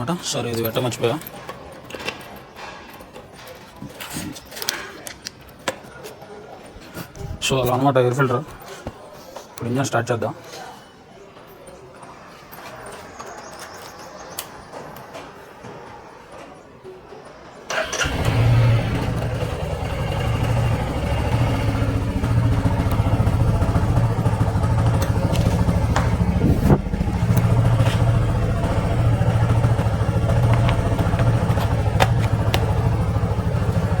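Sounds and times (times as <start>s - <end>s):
motorcycle engine idling: 17.7s - 34.0s
motorcycle engine starting: 17.7s - 34.0s.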